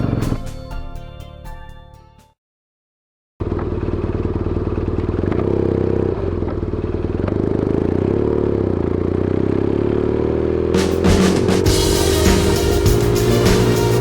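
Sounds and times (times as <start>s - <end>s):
motorcycle engine running: 3.4s - 14.0s.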